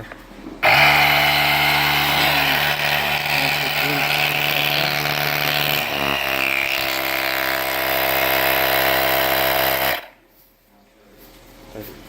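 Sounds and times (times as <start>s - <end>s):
small air compressor running: 0.6s - 10.1s.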